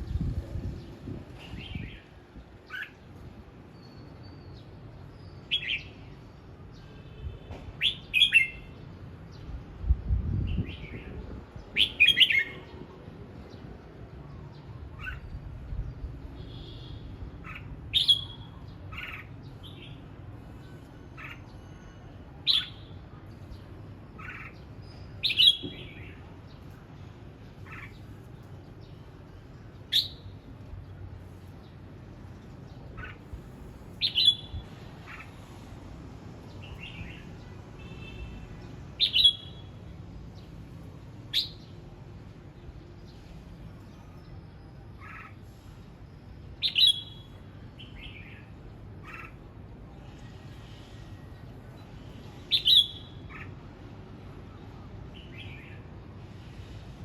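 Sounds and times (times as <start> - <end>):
bulbul chirping song: 16.4 - 20.0, 29.8 - 30.4, 34.0 - 35.2, 39.0 - 39.8, 46.6 - 49.4, 52.5 - 53.5.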